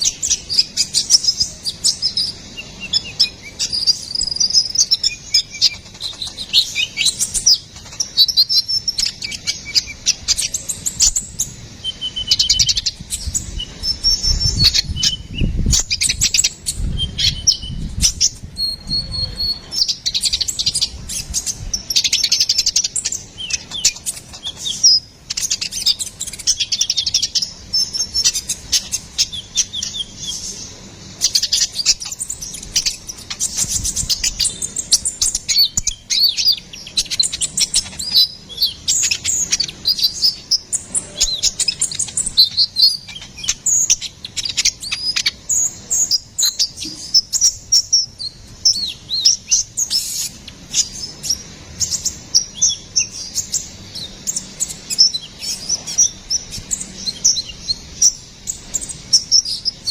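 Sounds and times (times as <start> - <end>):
small bird singing: 0.0 - 59.9.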